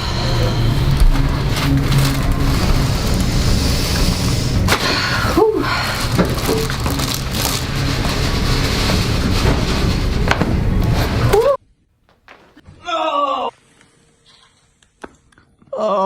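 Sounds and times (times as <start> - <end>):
steady background noise: 0.0 - 12.6.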